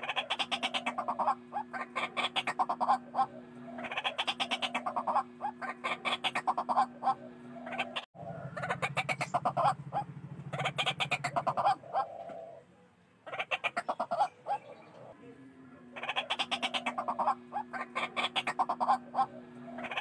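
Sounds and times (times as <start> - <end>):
waterhens calling harshly: 0.0 - 12.6, 13.2 - 15.1, 15.9 - 20.0
steady low hum: 0.0 - 20.0.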